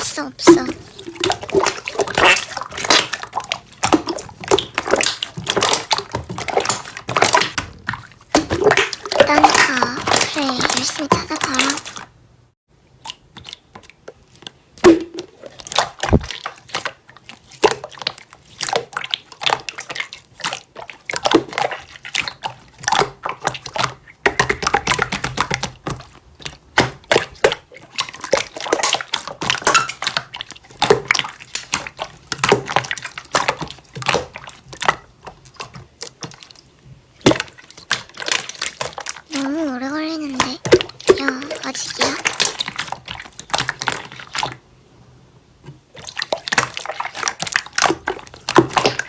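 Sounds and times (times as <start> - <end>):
slime squelching: 0.0 - 12.2, 12.9 - 44.7, 45.7 - 49.0.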